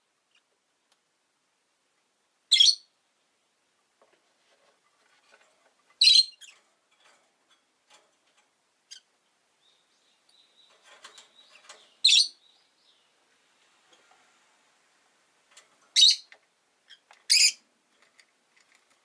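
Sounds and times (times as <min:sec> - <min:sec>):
lovebirds high-pitched chirps: 0:02.5 - 0:02.9, 0:06.0 - 0:06.6, 0:08.9 - 0:13.1, 0:15.9 - 0:17.6
soft bird chattering: 0:08.9 - 0:13.1, 0:15.9 - 0:17.6
small clicks: 0:18.0 - 0:19.0.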